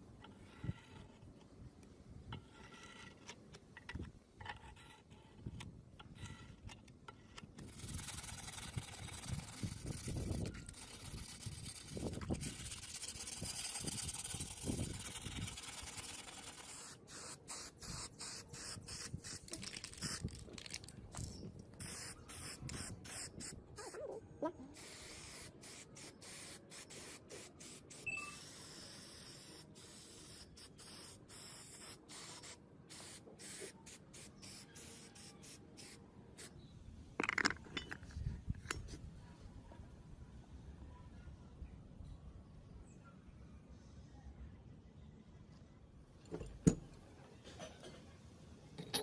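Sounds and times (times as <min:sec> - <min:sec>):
metal parts clunking: 0:48.8 - 0:49.0.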